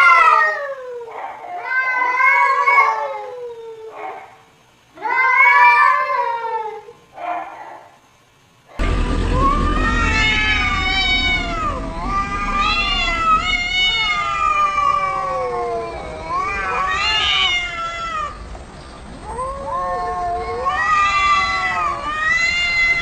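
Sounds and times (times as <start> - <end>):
cat yowling meows: 0.0 - 3.9, 19.3 - 23.0.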